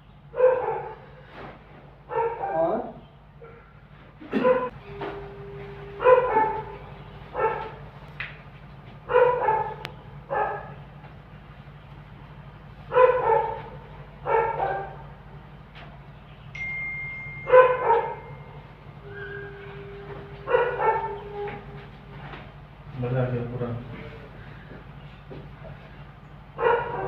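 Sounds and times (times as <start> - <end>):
steady low hum: 0.0 - 27.0
dog barking: 0.3 - 1.1, 2.1 - 3.6, 4.4 - 4.8, 6.0 - 7.8, 9.1 - 10.8, 12.9 - 15.1, 17.4 - 18.3, 19.9 - 21.8, 26.6 - 27.0.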